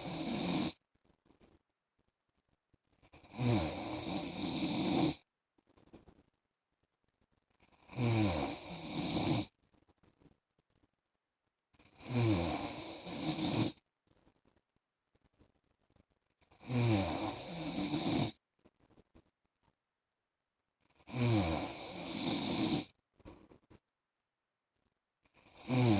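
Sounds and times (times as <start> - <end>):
man snoring: 0.0 - 0.8, 3.2 - 5.2, 7.9 - 9.5, 12.0 - 13.8, 16.6 - 18.4, 21.1 - 22.9, 25.5 - 25.9.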